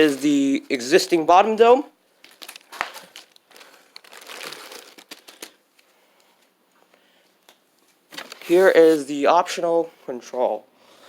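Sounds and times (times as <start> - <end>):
packaging crinkling and rustling: 2.1 - 5.9, 7.9 - 9.1.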